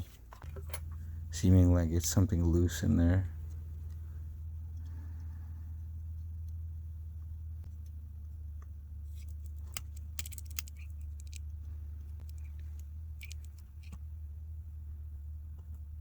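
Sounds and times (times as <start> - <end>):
steady low hum: 0.0 - 16.0
clicks and crinkling of small parts: 9.1 - 14.0.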